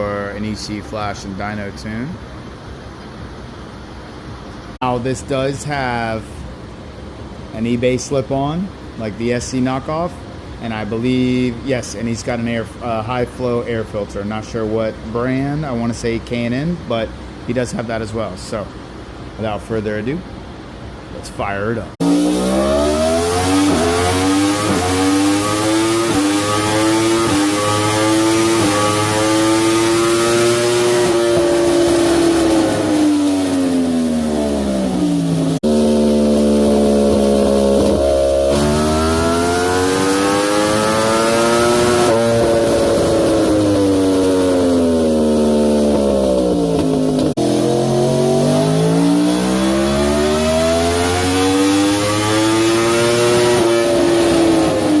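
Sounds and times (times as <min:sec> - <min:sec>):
motorcycle engine revving: 0:22.0 - 0:55.0.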